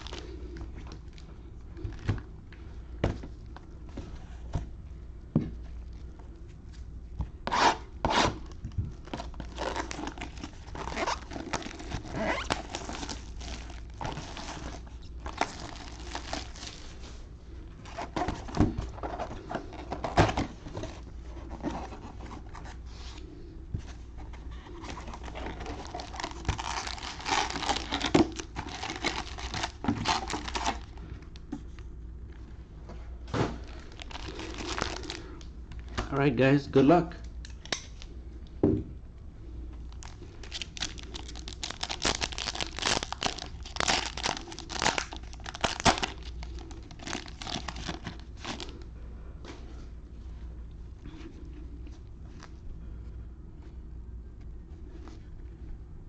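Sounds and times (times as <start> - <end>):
plastic wrapping tearing: 7.5 - 16.9, 24.9 - 31.0, 33.6 - 35.4, 39.9 - 48.8.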